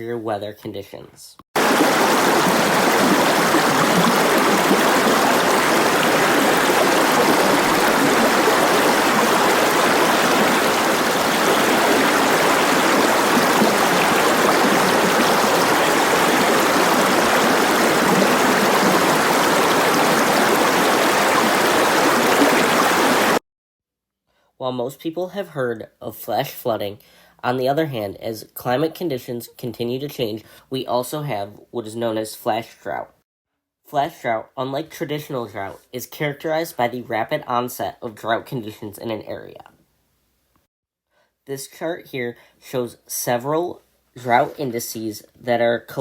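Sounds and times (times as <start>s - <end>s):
rushing water: 1.6s - 23.4s.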